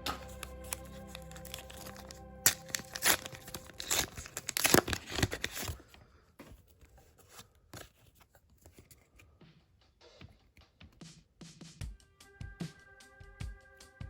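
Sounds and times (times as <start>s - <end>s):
wrapper tearing and crinkling: 0.1s - 6.0s
pack rustling and crackling: 0.1s - 9.0s.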